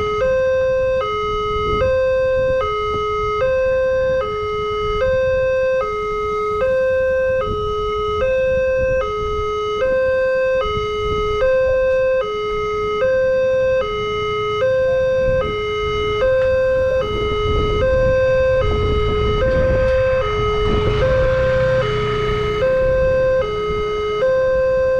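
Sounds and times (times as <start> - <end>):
level crossing siren hi-lo wail: 0.0 - 24.9
low rumble: 16.0 - 23.7.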